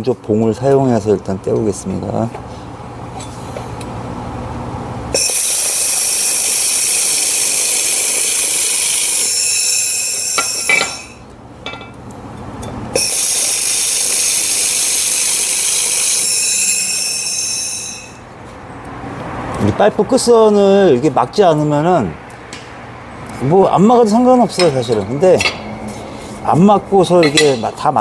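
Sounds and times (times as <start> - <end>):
laser welder hiss and whine: 5.1 - 11.2, 13.0 - 18.2.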